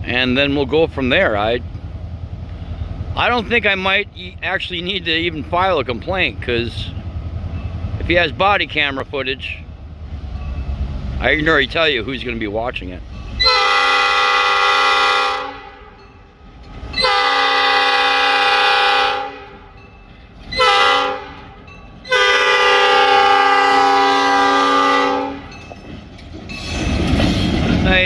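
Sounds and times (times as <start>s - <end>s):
locomotive air horn blasts: 13.4s - 16.0s, 17.0s - 19.7s, 20.5s - 25.6s.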